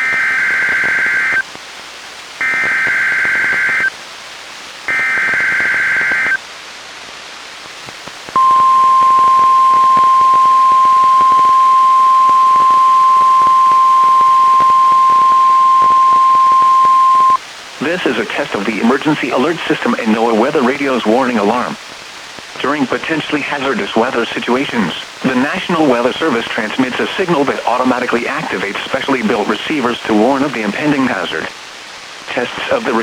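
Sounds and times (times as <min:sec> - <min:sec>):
steady warning alarm tone: 0:00.0 - 0:01.4, 0:02.4 - 0:03.9, 0:04.9 - 0:06.4, 0:08.4 - 0:17.4
radio hiss: 0:00.0 - 0:33.0
warbling two-tone data bursts: 0:08.4 - 0:17.4.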